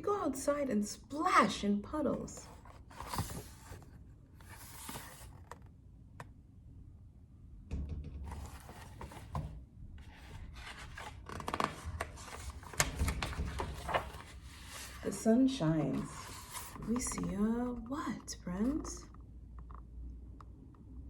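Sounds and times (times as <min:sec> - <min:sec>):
book pages rustling and turning: 0:02.1 - 0:05.8, 0:08.3 - 0:19.0.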